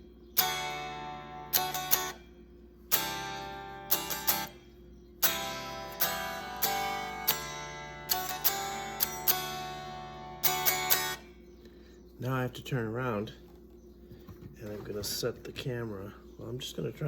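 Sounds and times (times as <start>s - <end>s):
electric guitar chords strummed: 0.0s - 11.5s.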